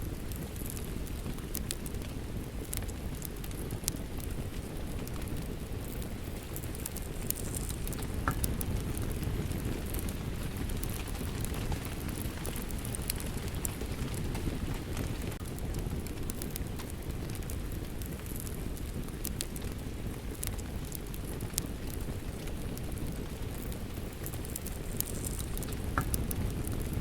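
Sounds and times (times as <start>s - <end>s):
fireplace fire crackling: 0.0s - 27.0s
rain: 0.0s - 27.0s.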